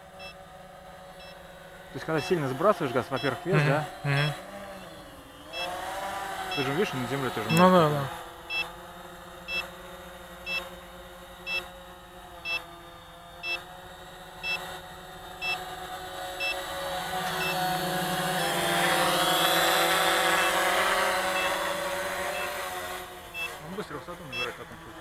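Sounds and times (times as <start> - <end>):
quadcopter motors humming: 0.0 - 25.0
short electronic beep: 3.2 - 4.4, 7.5 - 7.8.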